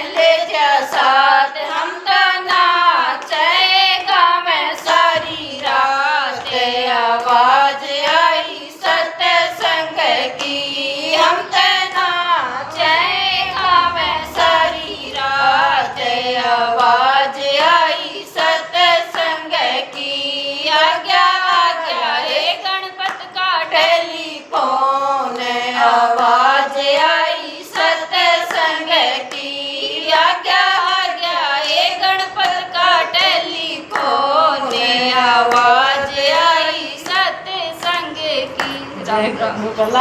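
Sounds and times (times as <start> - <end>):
women singing in unison: 0.0 - 40.0
sharp hand claps: 2.5 - 8.3, 32.4 - 38.9.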